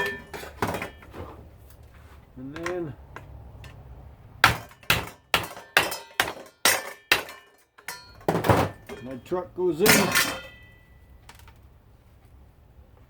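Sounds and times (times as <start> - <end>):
hammer striking metal: 4.4 - 9.2.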